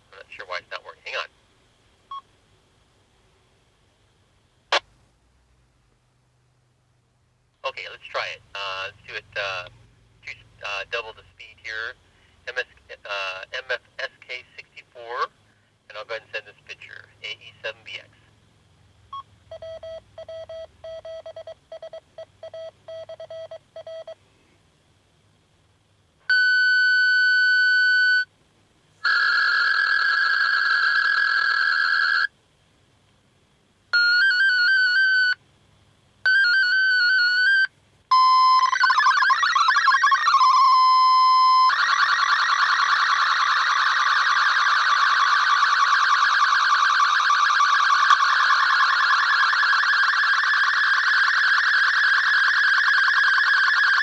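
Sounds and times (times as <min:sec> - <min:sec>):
dense warble of data tones: 0:36.4 - 0:54.0.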